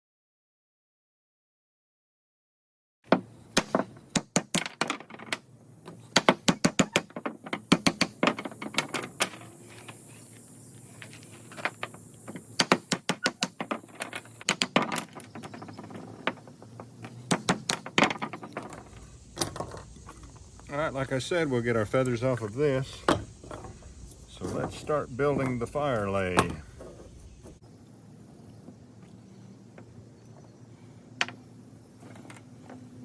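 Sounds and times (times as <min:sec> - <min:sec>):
wooden clicks and knocks: 0:03.1 - 0:10.0, 0:11.0 - 0:20.3.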